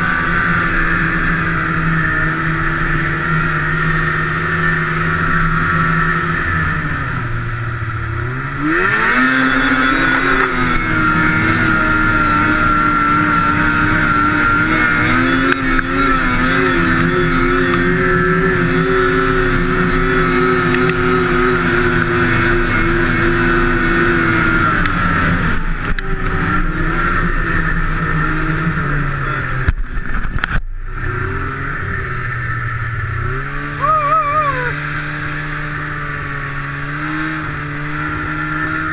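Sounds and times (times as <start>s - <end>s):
snowmobile engine idling and revving: 0.0s - 38.9s.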